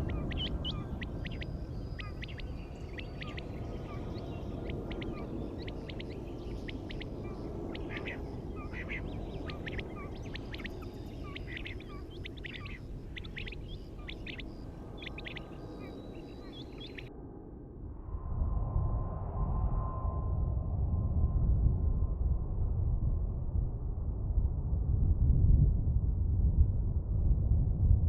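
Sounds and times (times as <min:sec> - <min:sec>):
small birds chirping: 0:00.0 - 0:17.1
steady low rumble: 0:00.0 - 0:28.0.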